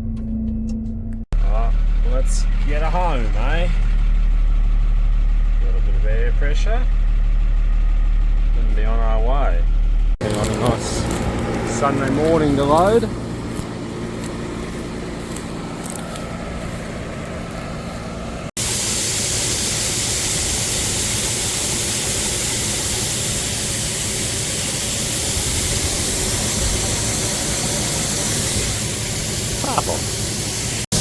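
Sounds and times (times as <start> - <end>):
vehicle engine idling: 0.0 - 31.0
road and wind noise: 9.9 - 18.6, 23.5 - 29.6.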